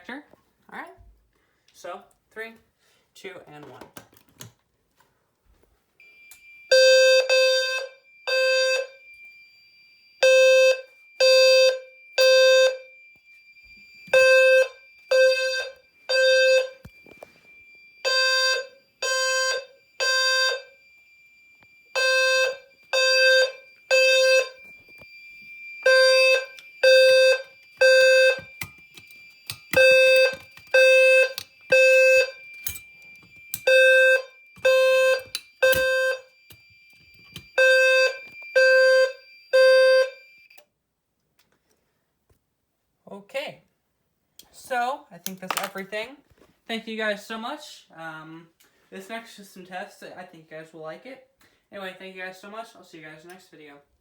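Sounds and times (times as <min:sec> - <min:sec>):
fire alarm low buzzy tone blasts: 0:06.0 - 0:40.6
thin steady high tone: 0:07.9 - 0:20.0.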